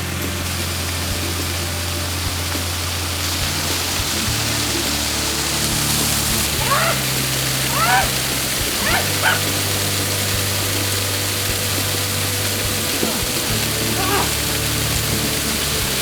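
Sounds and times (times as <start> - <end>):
music with low sustained notes: 0.0 - 16.0
waterfall rushing: 0.0 - 16.0
voice-like calls: 4.1 - 16.0.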